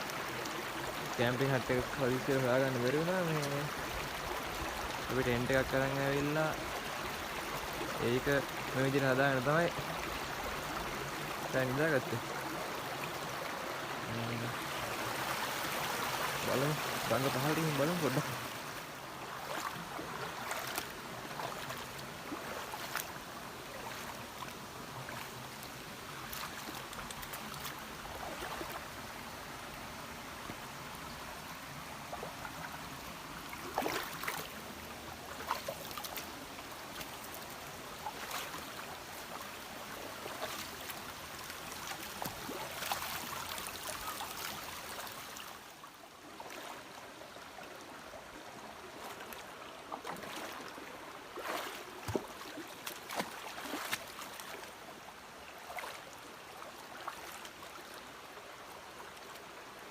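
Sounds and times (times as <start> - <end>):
river water rushing over stones: 0.0 - 59.9.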